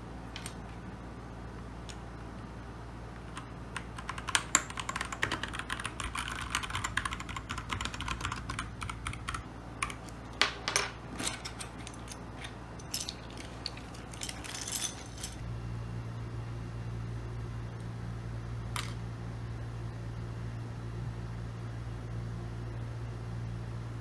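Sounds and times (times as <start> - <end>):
mechanical keyboard typing: 3.2 - 10.1.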